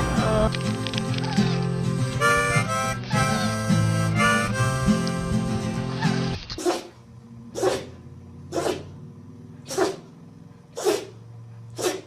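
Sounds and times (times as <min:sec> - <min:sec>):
dog sneezing: 0:06.0 - 0:06.9, 0:07.6 - 0:08.9, 0:09.7 - 0:10.0, 0:10.8 - 0:11.2, 0:11.8 - 0:12.0.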